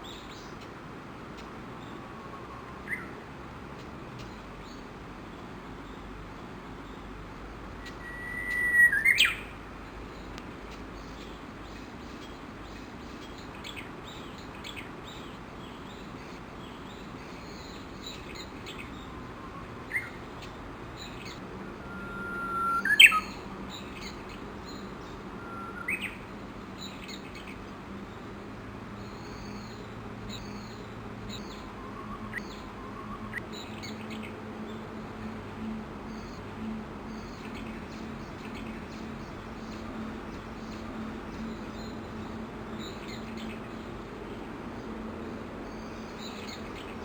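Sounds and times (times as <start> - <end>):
bush warbler singing: 0.0 - 47.0
faint high chirps: 21.8 - 24.2.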